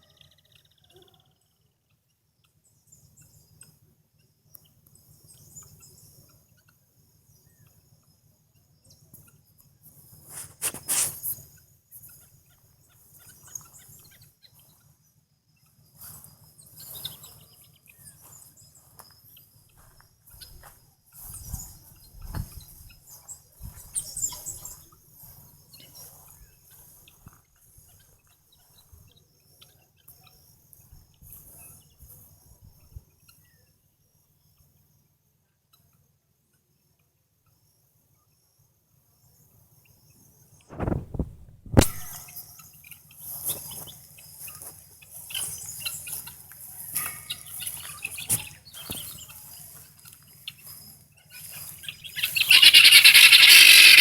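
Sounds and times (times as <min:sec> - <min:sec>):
insects trilling: 0:43.3 - 0:54.0
guineafowl harsh calls: 0:51.3 - 0:54.0.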